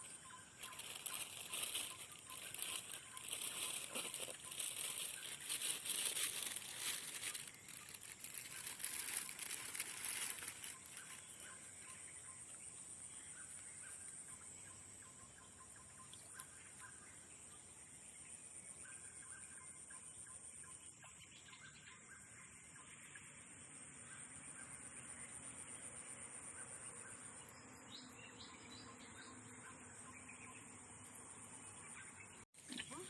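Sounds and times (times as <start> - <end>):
bird calls: 0.0 - 17.1.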